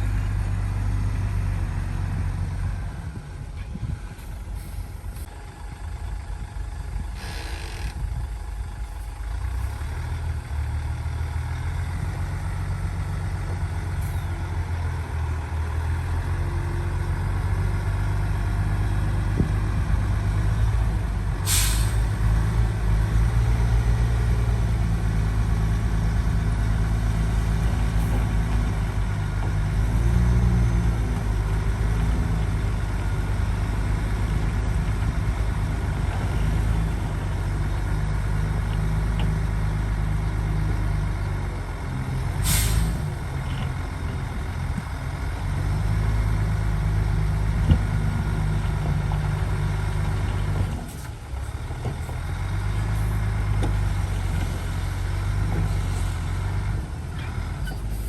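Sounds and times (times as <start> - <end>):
heavy diesel engine drone: 0.0 - 58.0
short hisses: 21.5 - 22.0, 42.4 - 43.0.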